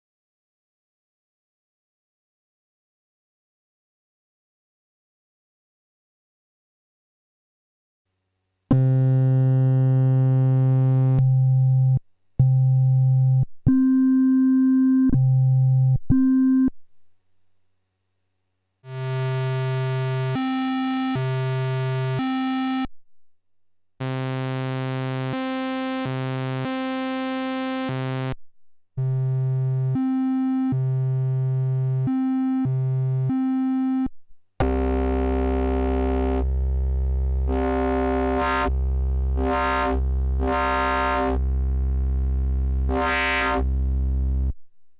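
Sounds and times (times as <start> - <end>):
buzzy fm synth tone: 34.6 - 44.5
synth oscillator tones: 34.6 - 44.5.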